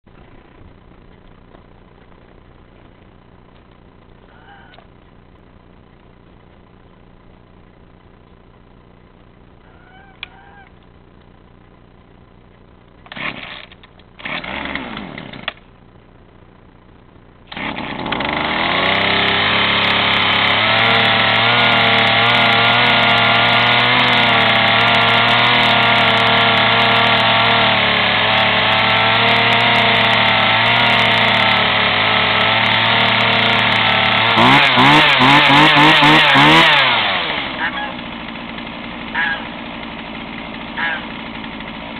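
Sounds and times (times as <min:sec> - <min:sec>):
chainsaw engine starting and running: 0:13.0 - 0:15.8, 0:17.4 - 0:41.9
chainsaw engine revving: 0:13.1 - 0:15.6, 0:17.5 - 0:41.9.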